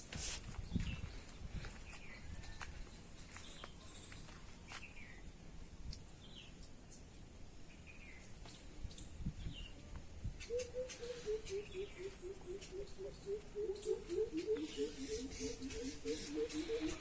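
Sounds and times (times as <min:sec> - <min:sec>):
bird chirps: 0:10.4 - 0:17.0
rapid low pulsed calls: 0:11.1 - 0:17.0.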